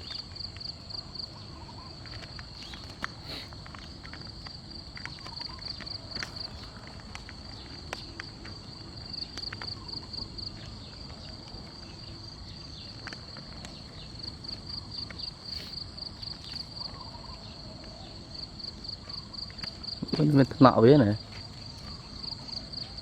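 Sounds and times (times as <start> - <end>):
light clicks and rustles: 0.0 - 17.1
night insects trilling: 0.0 - 23.0.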